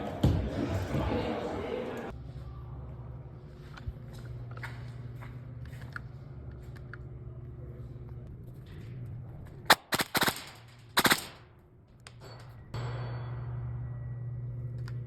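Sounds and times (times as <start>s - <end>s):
low steady hum: 2.0s - 15.0s
airsoft gun shots: 9.7s - 11.5s.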